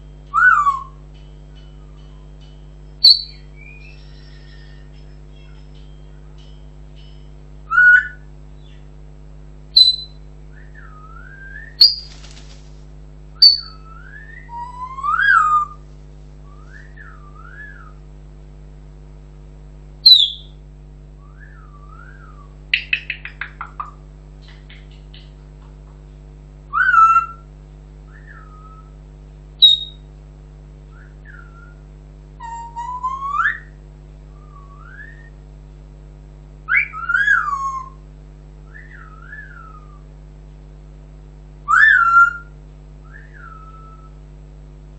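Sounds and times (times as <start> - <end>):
steady low hum: 0.0 - 44.9
parrot whistling: 0.3 - 1.0, 3.0 - 4.9, 7.7 - 8.2, 9.8 - 12.1, 13.4 - 15.8, 16.6 - 18.0, 20.1 - 20.6, 26.8 - 27.4, 29.6 - 30.0, 32.4 - 33.8, 36.7 - 38.0, 38.7 - 40.0, 41.7 - 42.5, 43.1 - 44.1
sharp high chirps: 3.0 - 4.9, 9.8 - 10.2, 11.8 - 12.3, 13.4 - 13.8, 29.6 - 30.0.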